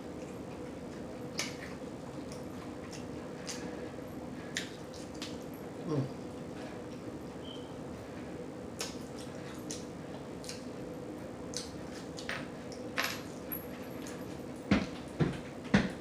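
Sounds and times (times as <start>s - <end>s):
faint steady hum: 0.0s - 16.0s
chewing and lip smacking: 0.2s - 3.8s, 4.5s - 7.1s, 8.8s - 10.8s, 11.4s - 12.9s.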